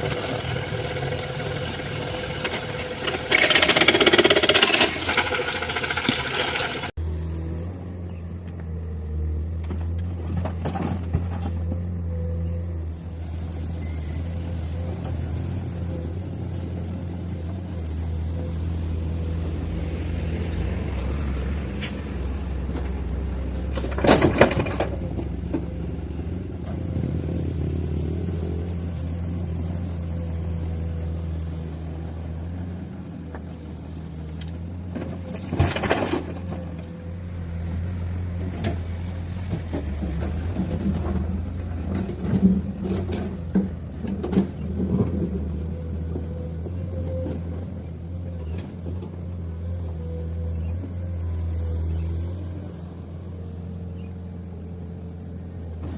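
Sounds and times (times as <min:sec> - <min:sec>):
knocks and clatters: 0:00.0 - 0:06.9, 0:23.7 - 0:25.7
heavy diesel machinery running: 0:00.0 - 0:08.2.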